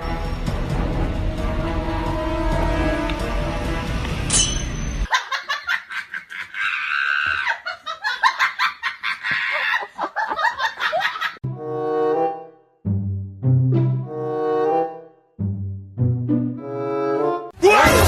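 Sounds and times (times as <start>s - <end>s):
music with low sustained notes: 0.0s - 4.3s
music: 0.0s - 5.1s, 11.4s - 18.0s
people laughing: 5.1s - 11.4s.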